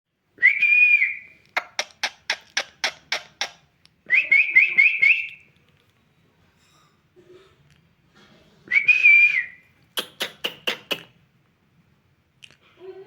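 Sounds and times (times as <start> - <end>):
parrot clicking calls: 1.5 - 3.7, 9.9 - 11.1.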